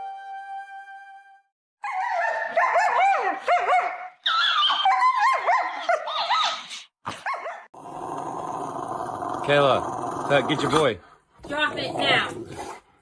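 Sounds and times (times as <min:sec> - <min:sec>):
dog whining and yowling: 0:04.2 - 0:06.6.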